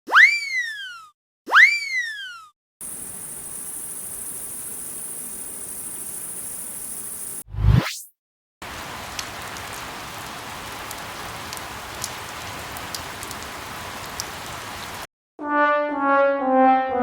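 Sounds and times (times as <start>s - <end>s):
rain hiss: 2.8s - 7.4s, 8.6s - 15.1s
drip ticks: 9.1s - 9.8s, 10.9s - 12.2s, 12.8s - 13.5s
descending brass sting: 15.4s - 17.0s.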